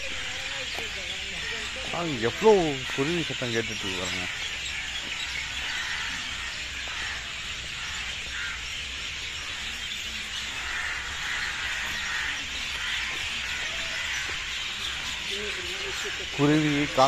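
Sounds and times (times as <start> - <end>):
chorus of small birds chirping: 0.0 - 17.0.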